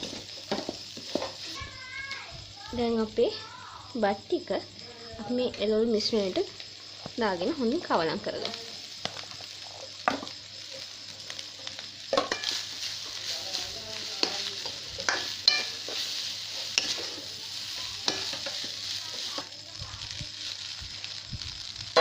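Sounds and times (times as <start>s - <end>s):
fried rice sizzling in a pan: 0.0s - 22.0s
spoon scraping a pan: 11.6s - 19.5s.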